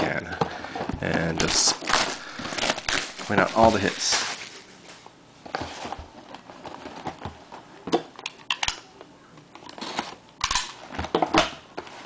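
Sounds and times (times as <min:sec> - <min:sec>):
cardboard packs rustling: 0:00.0 - 0:07.6.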